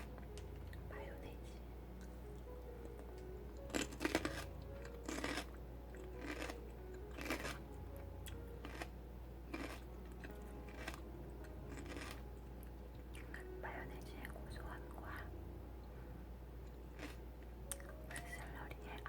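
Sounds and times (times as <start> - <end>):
crunchy celery chewing: 2.0 - 13.4, 16.6 - 18.3.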